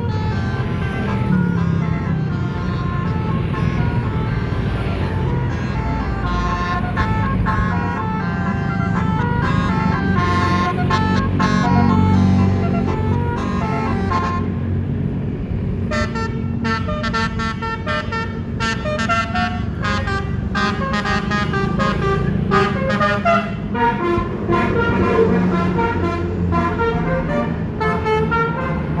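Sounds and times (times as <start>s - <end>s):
musical air horn tune: 0.0s - 14.6s, 15.8s - 29.0s
bus engine rumble: 0.0s - 29.0s.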